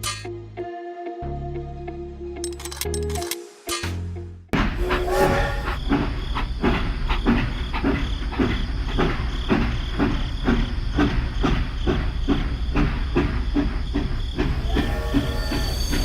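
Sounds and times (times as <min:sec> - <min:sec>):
machine chugging: 0:04.6 - 0:16.0.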